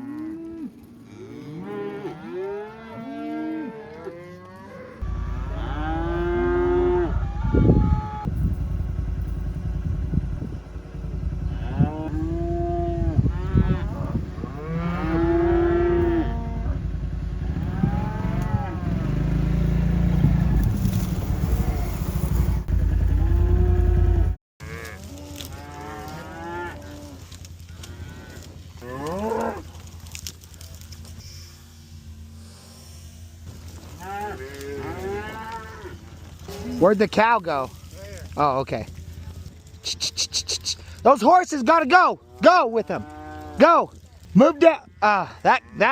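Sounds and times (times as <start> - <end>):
cows mooing: 0.0 - 8.3, 9.4 - 22.1, 22.8 - 37.3, 38.9 - 45.9
steady low rumble: 5.0 - 24.4.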